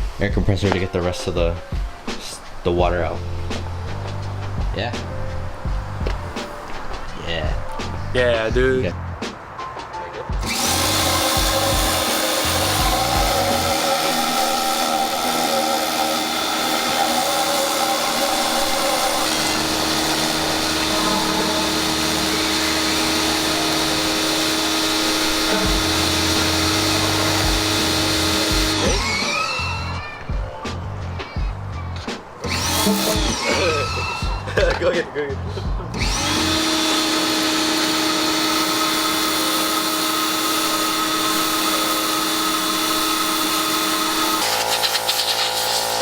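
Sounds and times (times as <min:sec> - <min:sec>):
background music: 0:00.0 - 0:45.9
compressed-air blow gun hissing: 0:10.4 - 0:29.2, 0:36.1 - 0:46.0.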